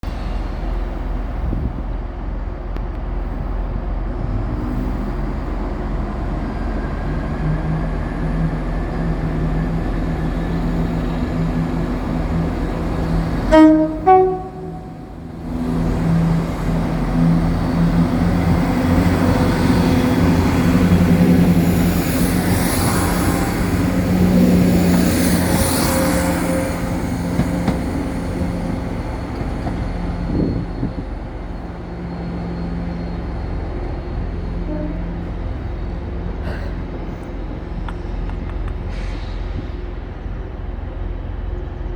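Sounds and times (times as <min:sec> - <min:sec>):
train diesel engines running: 0:00.0 - 0:41.9
two-tone train horn: 0:13.4 - 0:15.2, 0:34.6 - 0:35.3.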